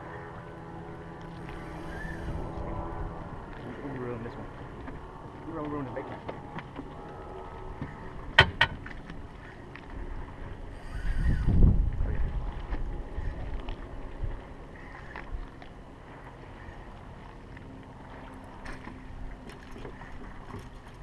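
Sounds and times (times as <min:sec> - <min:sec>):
wind rumbling on microphone: 0:00.0 - 0:21.0
sharp knocks: 0:08.4 - 0:08.9.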